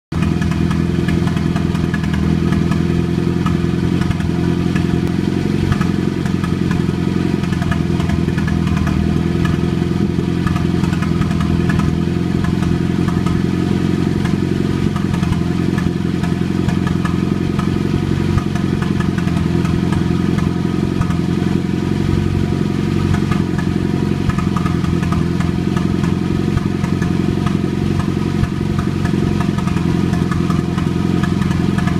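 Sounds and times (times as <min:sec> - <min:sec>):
engine idling: 0:00.1 - 0:31.9
engine popping: 0:00.1 - 0:31.9.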